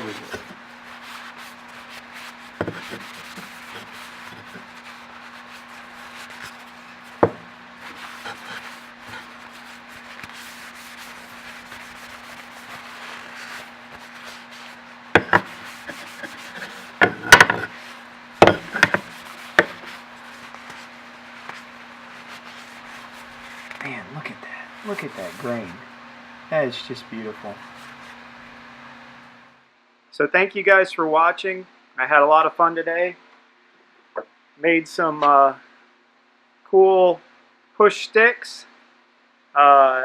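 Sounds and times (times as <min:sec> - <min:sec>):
cloth rag scrubbing wood: 0:00.0 - 0:25.8, 0:27.2 - 0:28.4
sharp wooden knocks: 0:07.2 - 0:07.4, 0:15.2 - 0:15.5, 0:17.0 - 0:17.7, 0:18.4 - 0:19.8.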